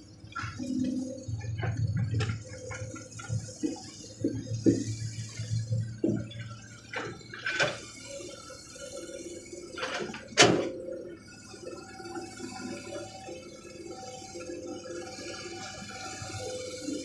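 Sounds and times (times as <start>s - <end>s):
excavator engine hum: 0.0s - 17.0s
excavator knocks and clanks: 0.3s - 8.0s, 9.8s - 10.8s.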